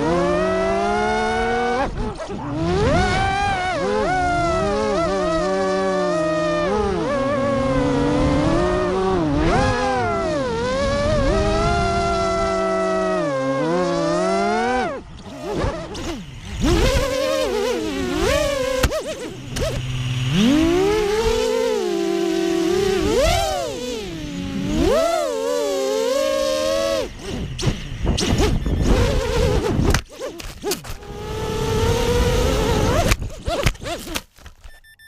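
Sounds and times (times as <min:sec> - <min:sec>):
drone motors whining: 0:00.0 - 0:35.0
wind noise: 0:26.3 - 0:34.1.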